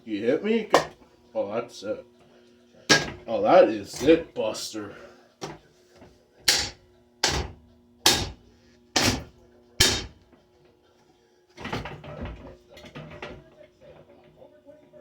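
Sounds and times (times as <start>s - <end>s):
bat striking ceiling fan: 2.9s - 4.2s, 6.5s - 10.2s.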